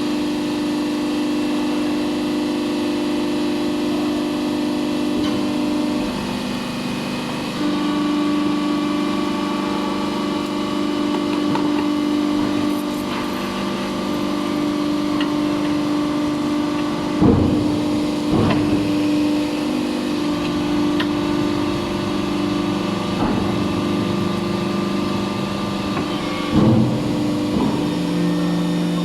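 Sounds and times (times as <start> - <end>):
hydraulic baler humming: 0.0 - 29.0
loud machine clunks: 4.2 - 7.8, 9.5 - 29.0.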